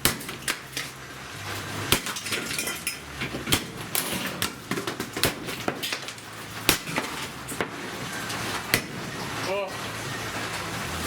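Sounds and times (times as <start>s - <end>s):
hard plastic being smashed: 0.0s - 9.4s
loose parts clattering: 0.3s - 7.7s.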